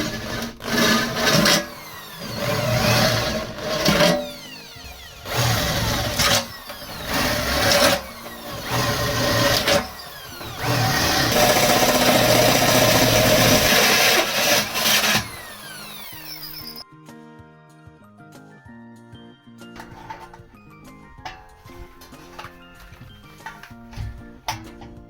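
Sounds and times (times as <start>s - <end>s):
power tool on steel pail: 0.0s - 16.8s
music: 0.0s - 25.0s.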